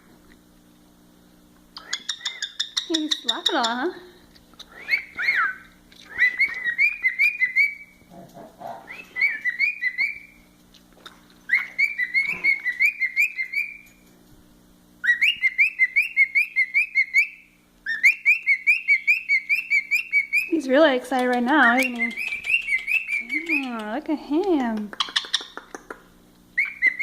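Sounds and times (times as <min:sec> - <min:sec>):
cockatiel whistling chirps: 0:01.8 - 0:03.4, 0:04.7 - 0:08.0, 0:08.9 - 0:10.4, 0:11.5 - 0:13.9, 0:15.0 - 0:20.5, 0:21.8 - 0:23.7, 0:26.6 - 0:27.0.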